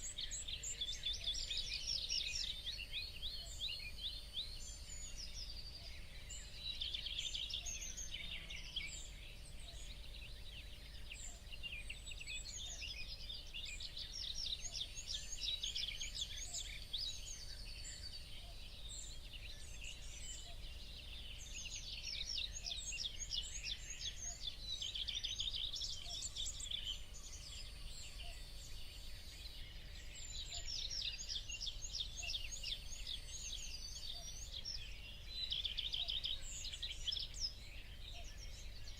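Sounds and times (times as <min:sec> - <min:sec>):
small birds chirping and twittering: 0:00.0 - 0:38.9.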